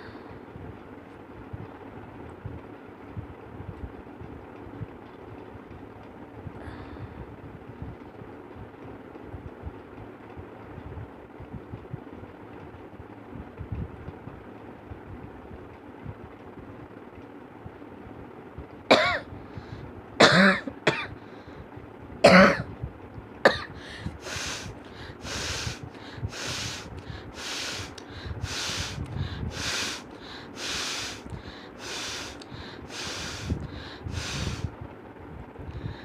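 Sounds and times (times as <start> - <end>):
person coughing: 18.9 - 19.3, 20.2 - 21.1, 22.2 - 22.7, 23.5 - 23.8
person blowing through nose: 24.2 - 30.0, 30.6 - 31.2, 31.8 - 34.7.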